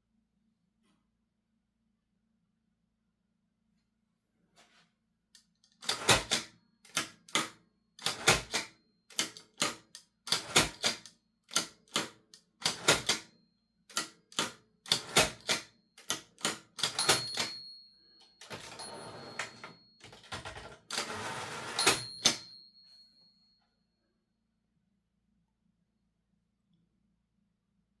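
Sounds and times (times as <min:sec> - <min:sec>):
typewriter bell ring: 0:05.8 - 0:07.4, 0:08.0 - 0:11.8, 0:12.6 - 0:13.4, 0:14.0 - 0:23.4
typewriter clacking: 0:05.8 - 0:13.3, 0:13.9 - 0:17.6, 0:18.4 - 0:22.5
typewriter rattling: 0:05.8 - 0:13.3, 0:13.9 - 0:17.6, 0:18.4 - 0:22.5.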